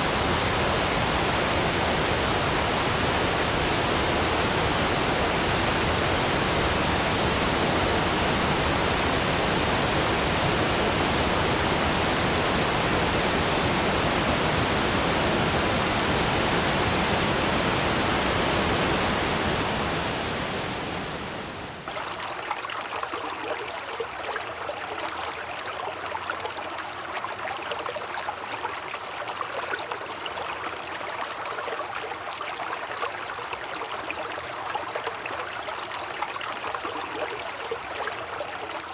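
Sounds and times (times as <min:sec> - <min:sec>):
waterfall rushing: 0:00.0 - 0:21.9.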